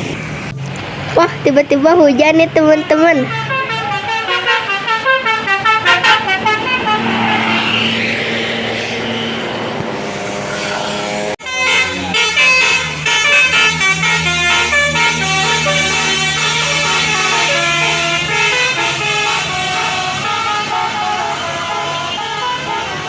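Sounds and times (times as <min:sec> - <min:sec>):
musical bus horn tune: 0:02.7 - 0:07.5, 0:11.4 - 0:23.0
rushing noise: 0:04.7 - 0:11.4.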